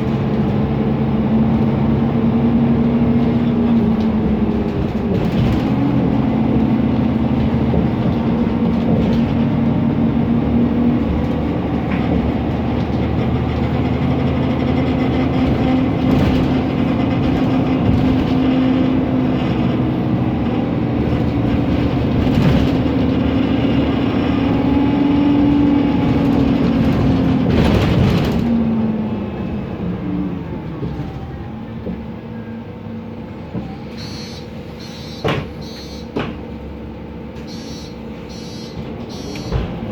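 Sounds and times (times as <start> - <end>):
bus engine running: 0.0 - 39.9
knocks and rattles: 3.2 - 9.6, 11.0 - 19.0, 21.0 - 23.4, 25.7 - 28.8.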